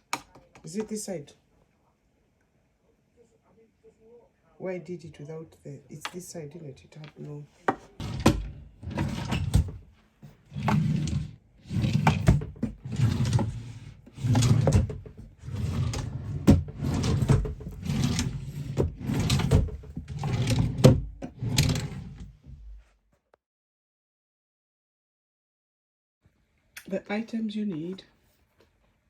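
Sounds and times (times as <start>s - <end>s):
wood scraping and knocking: 7.7s - 22.2s.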